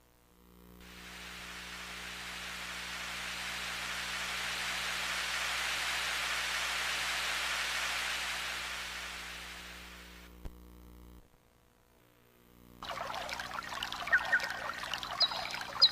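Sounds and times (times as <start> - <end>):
even hiss: 0.8 - 10.4.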